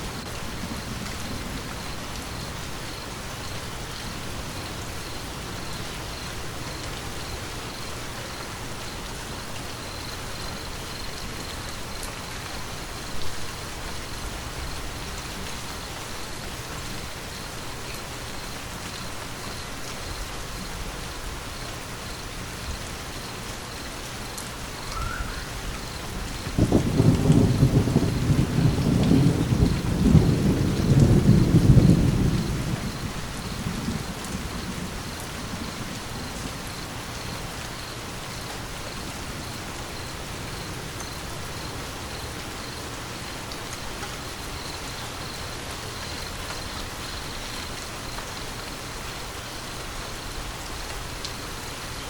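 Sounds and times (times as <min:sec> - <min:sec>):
rumble of thunder: 0:00.0 - 0:02.8, 0:25.0 - 0:37.4
steady rain: 0:00.0 - 0:52.0.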